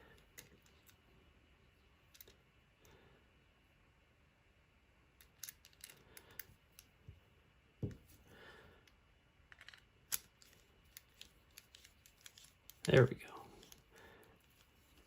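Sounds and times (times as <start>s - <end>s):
small metal parts clicking: 5.2s - 6.9s, 9.5s - 15.0s.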